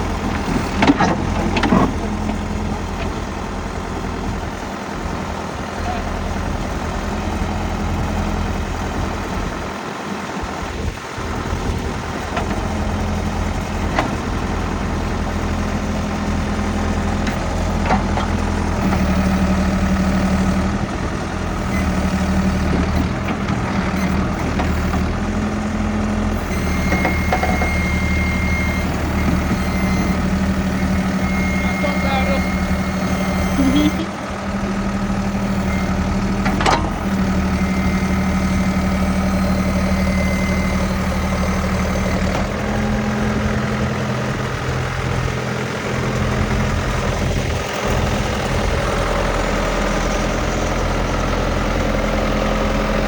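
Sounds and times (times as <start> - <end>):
backhoe diesel engine running: 0.0 - 53.0
high-pitched beep: 30.8 - 34.1.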